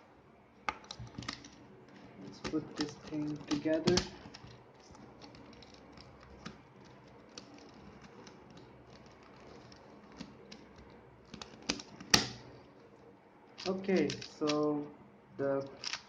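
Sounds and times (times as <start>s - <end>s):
plastic puzzle cube pieces clicking: 15.6s - 16.0s.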